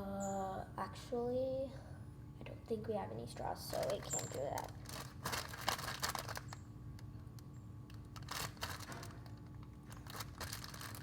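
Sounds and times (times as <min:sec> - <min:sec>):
plastic bag rustling: 0:03.6 - 0:06.6, 0:07.9 - 0:11.0.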